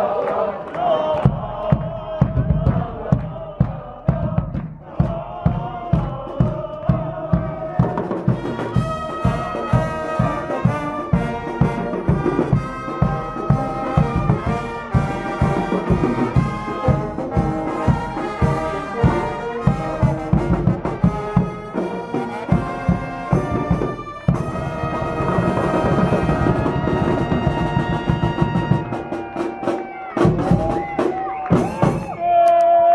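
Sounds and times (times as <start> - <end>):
bass drum beat: 1.2 - 21.6
trumpets and trombones: 4.9 - 32.2
held horn notes: 6.6 - 29.1.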